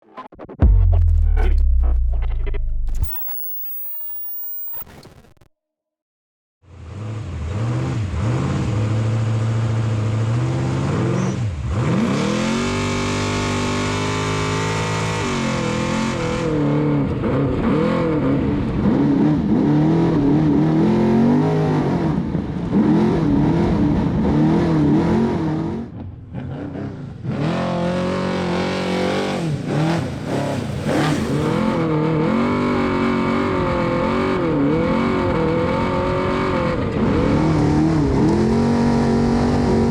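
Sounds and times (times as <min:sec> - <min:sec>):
off-road vehicle engine revving: 0:06.7 - 0:25.8, 0:26.4 - 0:39.9.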